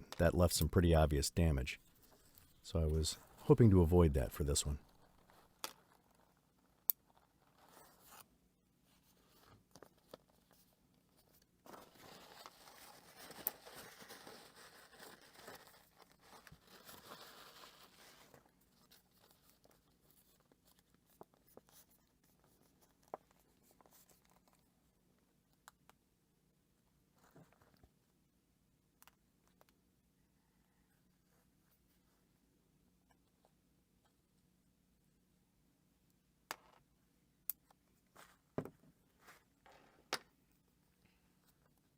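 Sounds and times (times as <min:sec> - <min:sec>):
paper rustling: 0:11.2 - 0:24.6.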